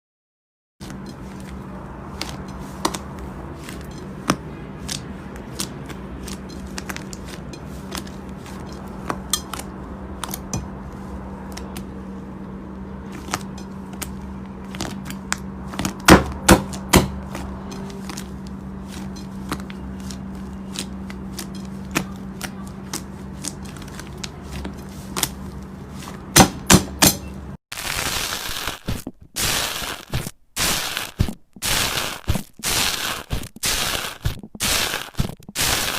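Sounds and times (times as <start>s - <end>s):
slime crunching: 0.8s - 11.9s, 13.0s - 26.3s, 27.8s - 35.9s
low hum: 7.4s - 26.0s.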